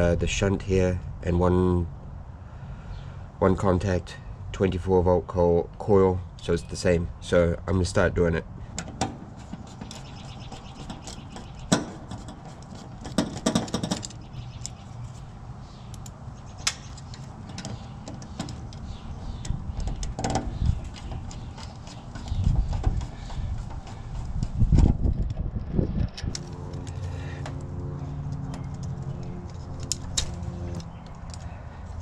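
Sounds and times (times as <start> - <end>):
hand tools clicking and rattling: 8.8 - 14.8, 16.0 - 25.3, 26.1 - 31.6.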